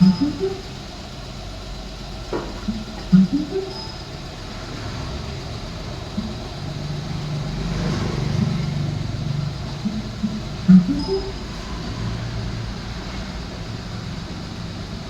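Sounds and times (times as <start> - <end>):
motor vehicle engine running: 0.0 - 15.0.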